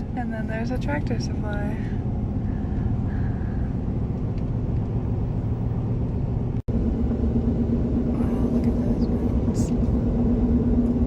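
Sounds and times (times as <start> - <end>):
road and engine rumble: 0.0 - 11.0
steady hum: 5.1 - 11.0.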